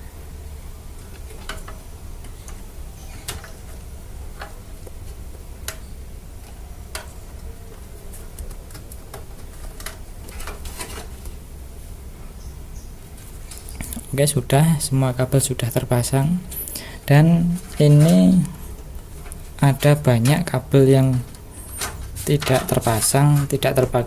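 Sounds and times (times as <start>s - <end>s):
steady low hum: 0.0s - 24.0s
cable handling: 17.2s - 24.0s.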